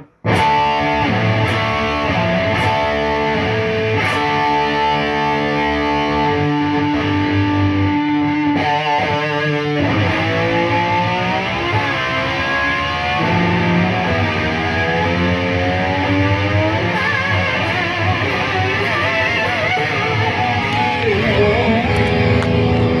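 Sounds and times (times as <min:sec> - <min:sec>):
distorted electric guitar: 0:00.0 - 0:23.0.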